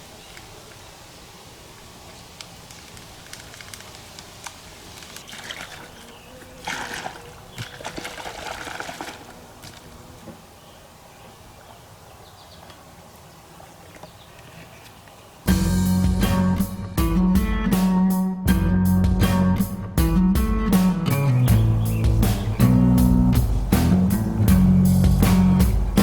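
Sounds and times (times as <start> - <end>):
water sloshing in a bottle: 2.8 - 10.4.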